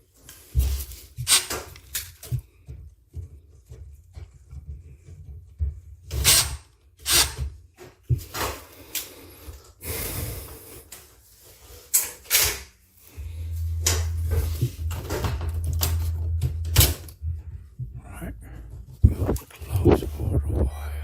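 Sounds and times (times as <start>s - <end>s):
knocks clicks and scrapes on parts: 0.2s - 9.1s, 11.8s - 12.7s
low steady hum: 13.0s - 21.0s.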